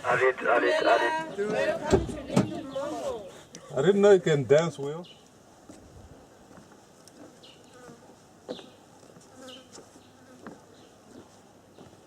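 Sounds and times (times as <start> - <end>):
faint insect buzzing: 7.2 - 10.7.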